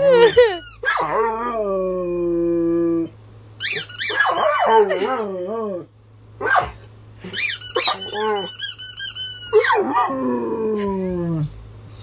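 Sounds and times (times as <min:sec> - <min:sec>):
squeaky toy squeaking: 0:00.2 - 0:00.9, 0:03.6 - 0:05.2, 0:07.2 - 0:09.7.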